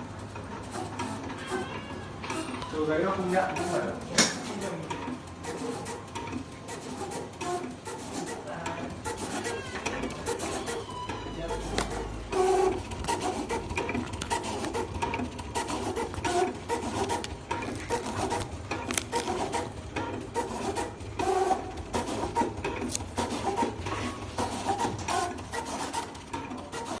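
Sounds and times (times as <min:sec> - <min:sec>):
cutting machine motors whirring: 0:00.0 - 0:27.0
machine clicks: 0:11.6 - 0:27.0.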